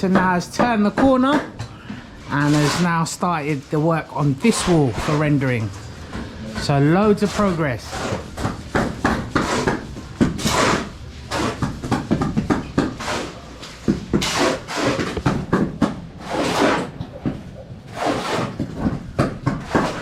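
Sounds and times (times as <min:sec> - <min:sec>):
hand tools scraping cement: 0:00.0 - 0:05.7, 0:06.5 - 0:17.1, 0:17.9 - 0:20.0.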